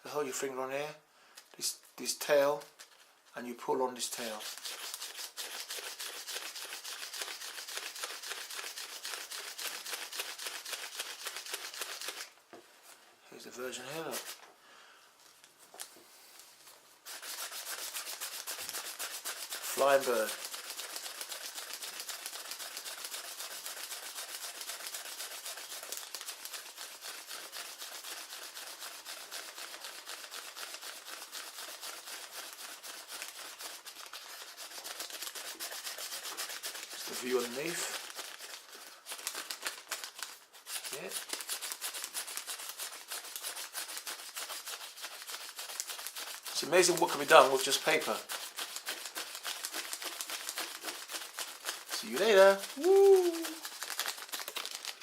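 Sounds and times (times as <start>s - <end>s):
paper rustling: 28.4s - 55.0s
paper wings flapping: 43.4s - 55.0s.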